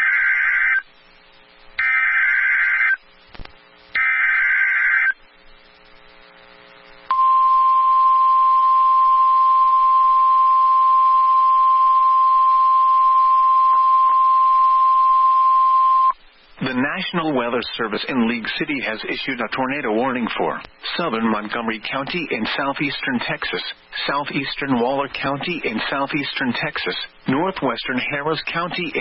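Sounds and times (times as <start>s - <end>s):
steady high alarm tone: 7.1s - 16.2s.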